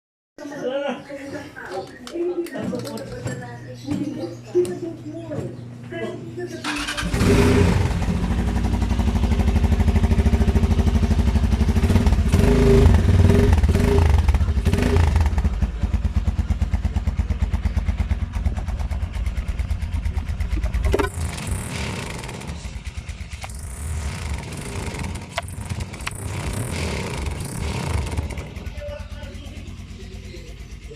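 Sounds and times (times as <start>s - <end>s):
motorcycle engine idling: 6.6s - 30.9s.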